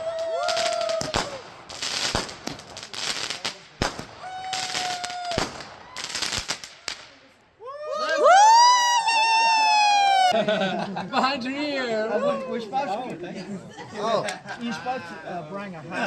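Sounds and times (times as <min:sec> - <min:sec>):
firework crackling: 0:00.0 - 0:07.5
firework bangs: 0:00.2 - 0:07.3.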